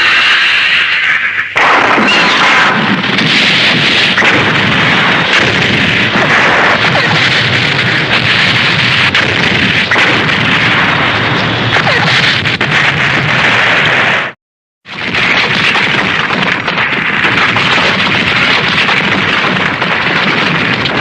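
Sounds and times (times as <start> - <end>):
crackles: 0.0 - 21.0.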